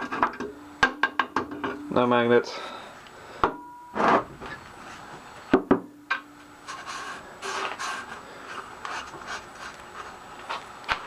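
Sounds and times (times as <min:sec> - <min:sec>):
sharp knock with ringing tone: 0:05.5 - 0:06.2
rubbing and handling noises: 0:06.6 - 0:10.7.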